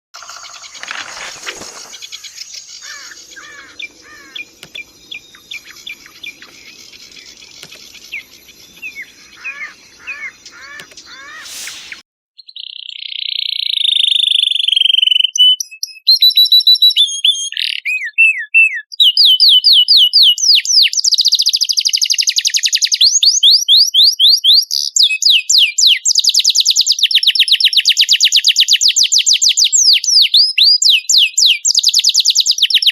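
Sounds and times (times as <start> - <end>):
harsh buzzing bird trill: 0.2 - 12.0
songbird chirps: 0.2 - 14.0
faint hiss: 11.3 - 12.0.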